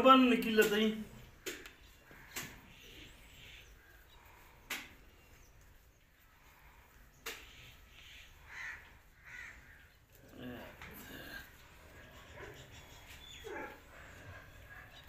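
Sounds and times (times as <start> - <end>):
faint bird chirps: 12.0 - 15.0.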